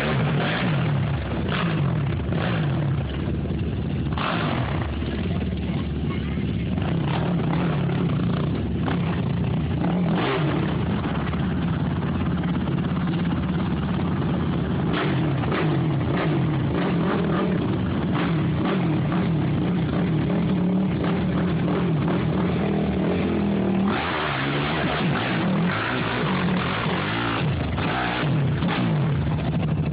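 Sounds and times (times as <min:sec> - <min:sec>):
quad bike engine revving: 0:00.0 - 0:29.9.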